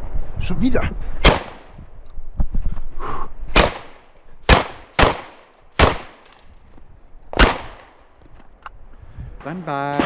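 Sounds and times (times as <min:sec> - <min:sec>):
shotgun shots echoing: 0:01.2 - 0:01.8, 0:03.5 - 0:06.5, 0:07.4 - 0:08.1.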